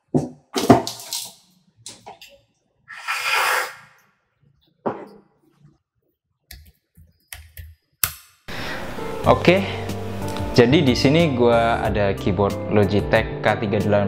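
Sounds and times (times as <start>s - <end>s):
music: 8.5s - 14.0s.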